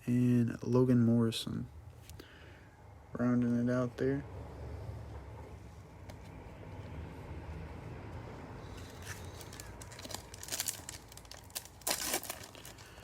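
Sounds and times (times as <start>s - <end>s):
wrapper crinkling and tearing: 8.7s - 13.0s.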